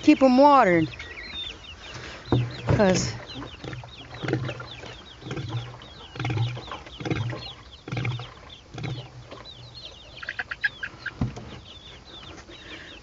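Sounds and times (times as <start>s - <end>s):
chicks peeping: 0.0s - 13.0s
dull low thumps: 2.2s - 9.8s.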